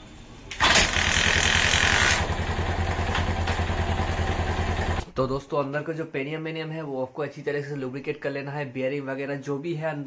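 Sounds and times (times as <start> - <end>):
motorcycle engine starting: 0.5 - 5.1
motorcycle engine idling: 2.2 - 5.0.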